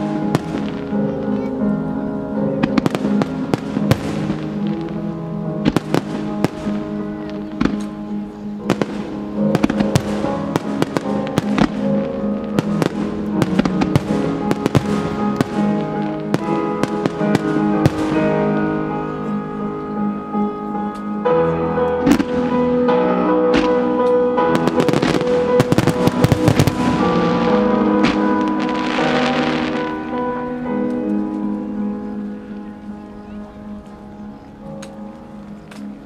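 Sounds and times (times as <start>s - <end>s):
fireworks bursting and crackling: 0.0s - 1.5s, 2.6s - 18.6s, 22.0s - 22.8s, 23.5s - 30.3s
music: 0.0s - 36.0s.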